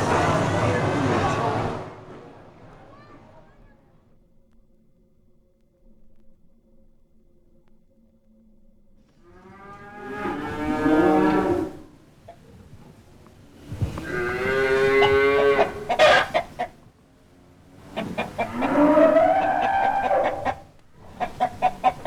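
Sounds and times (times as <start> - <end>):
cows mooing: 9.2 - 12.0, 13.8 - 16.6, 17.7 - 22.0
hen clucking: 14.9 - 16.8, 17.8 - 22.0.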